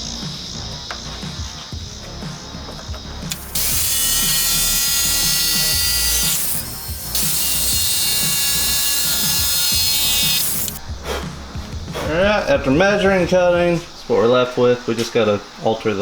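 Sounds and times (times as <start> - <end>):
background music: 0.0 - 15.6
power cutting tool whine: 3.3 - 10.8.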